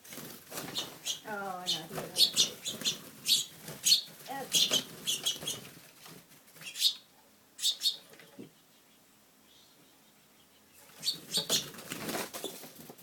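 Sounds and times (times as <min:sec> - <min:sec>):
finches chirping: 0:00.6 - 0:05.7, 0:06.6 - 0:11.8.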